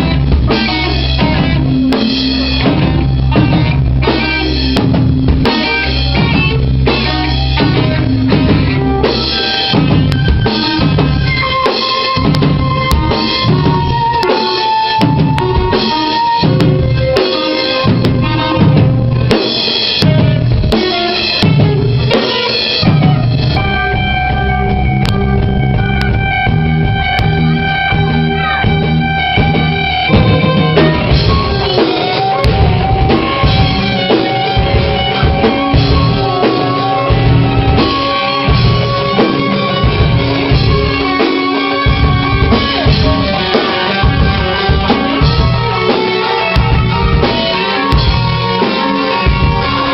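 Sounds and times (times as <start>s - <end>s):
live rock band playing: 0.0s - 49.9s.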